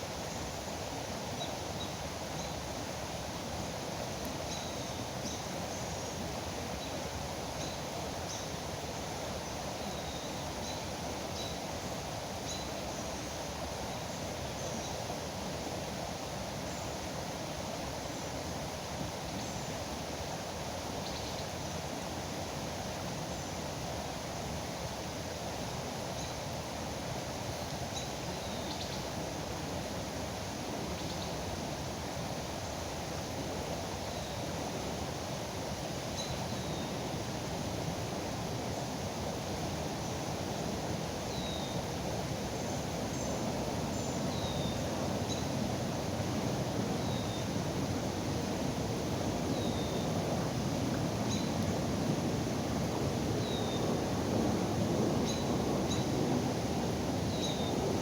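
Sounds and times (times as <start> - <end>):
river water rushing: 36.9 - 58.0.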